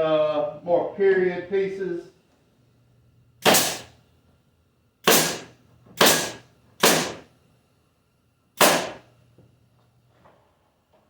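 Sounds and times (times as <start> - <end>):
nail gun firing: 3.4 - 4.0, 5.0 - 7.3, 8.6 - 9.1.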